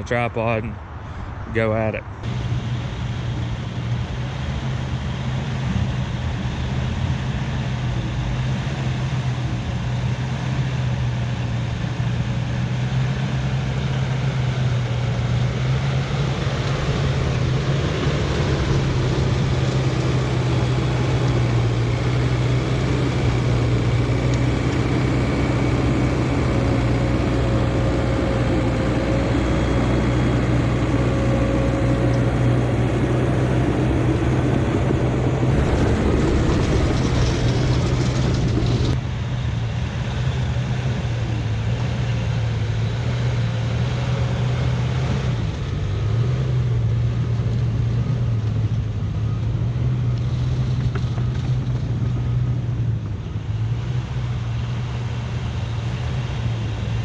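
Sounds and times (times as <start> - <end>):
bulldozer diesel engine running: 2.3 - 39.4.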